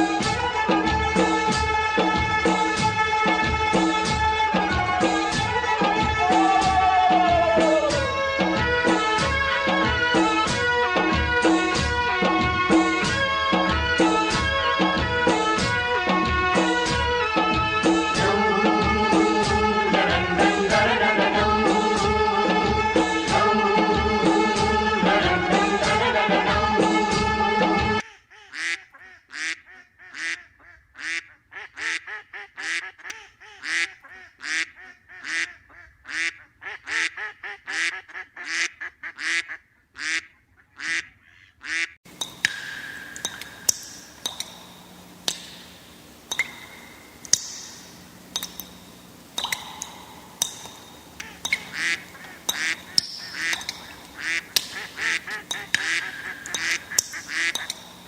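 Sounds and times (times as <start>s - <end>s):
background hiss: 0.0s - 27.7s, 42.1s - 58.0s
ducks quacking: 0.0s - 58.0s
sharp clicks: 42.1s - 58.0s.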